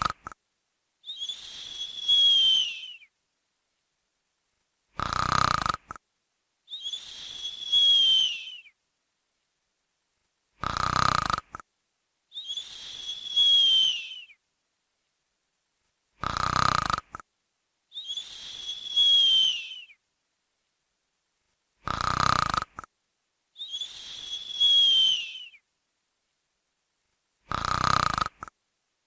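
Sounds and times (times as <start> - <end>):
rattling snore: 0.0 - 0.4, 5.0 - 6.0, 10.6 - 11.6, 16.2 - 17.2, 21.8 - 22.9, 27.5 - 28.6
whistling breath: 1.0 - 3.1, 6.7 - 8.8, 12.3 - 14.4, 17.9 - 20.0, 23.6 - 25.6.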